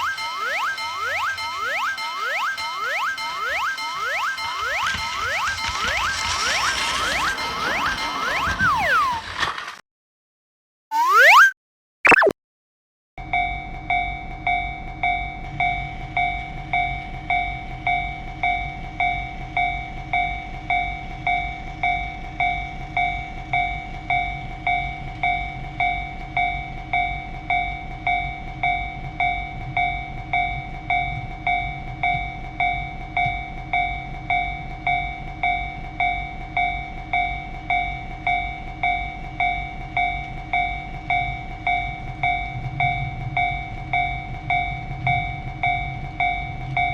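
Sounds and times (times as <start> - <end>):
passing train rumble: 4.9 - 9.4
railroad crossing bell ringing: 13.2 - 46.9.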